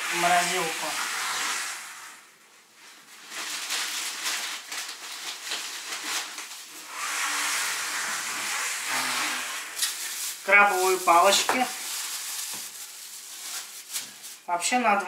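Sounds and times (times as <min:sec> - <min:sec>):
plastic bags rustling: 0:00.0 - 0:15.0.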